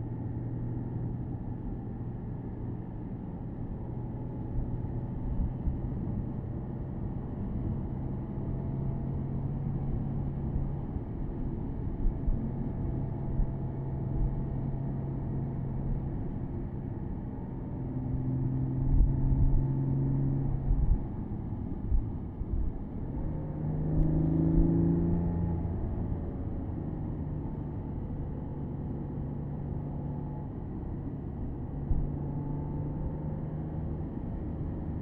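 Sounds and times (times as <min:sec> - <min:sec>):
road noise: 0:00.0 - 0:35.0
car engine: 0:00.1 - 0:35.0.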